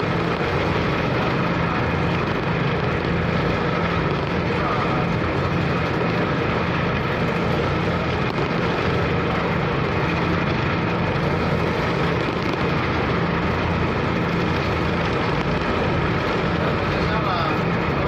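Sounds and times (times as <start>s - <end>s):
ship engines droning: 0.0s - 18.0s
wind and water rushing: 0.0s - 18.0s.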